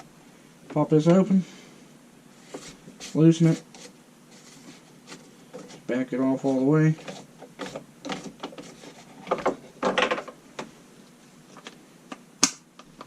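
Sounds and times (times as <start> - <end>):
plastic and metal scrapes and rattles: 6.4 - 10.4.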